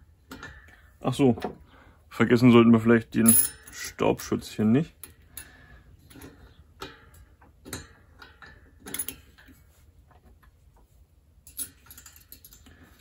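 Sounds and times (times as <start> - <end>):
small metal parts clicking: 5.0 - 9.5, 11.4 - 13.0.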